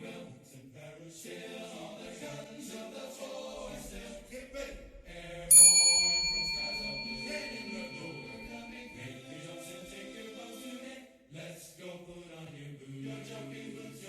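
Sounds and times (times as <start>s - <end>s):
loud metallic ding: 5.5s - 9.0s.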